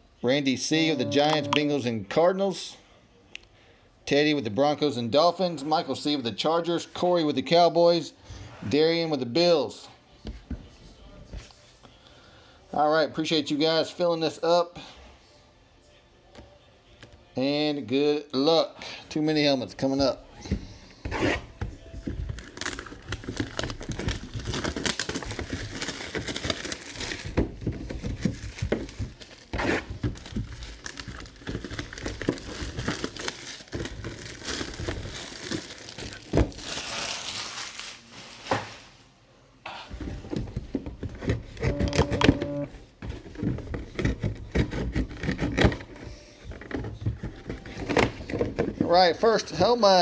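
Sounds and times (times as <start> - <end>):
packaging rustling and ripping: 21.1 - 39.0, 41.0 - 48.9.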